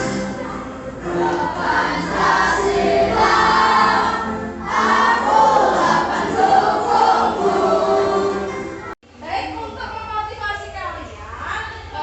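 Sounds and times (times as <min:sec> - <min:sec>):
choir singing: 0:00.0 - 0:09.0
music: 0:00.0 - 0:09.0.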